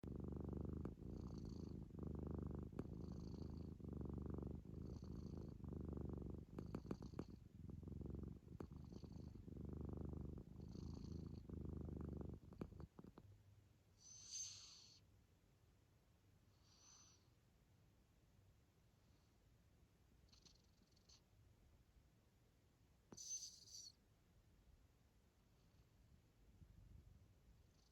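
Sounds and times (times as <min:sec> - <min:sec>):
kitten snoring: 0:00.0 - 0:13.3, 0:14.0 - 0:15.0, 0:16.5 - 0:17.3, 0:20.2 - 0:21.2, 0:23.1 - 0:24.0, 0:27.6 - 0:27.9.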